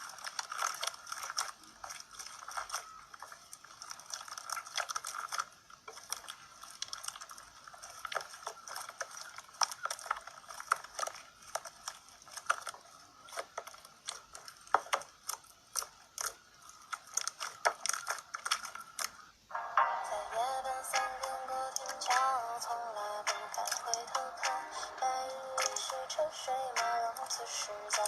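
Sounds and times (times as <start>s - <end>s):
slime squeezed by hand: 0.0s - 19.3s.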